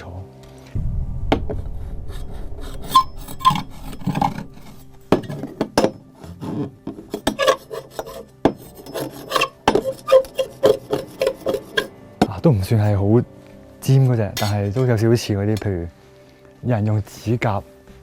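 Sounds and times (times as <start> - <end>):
rasping scraping with squeaks: 6.2 - 12.0.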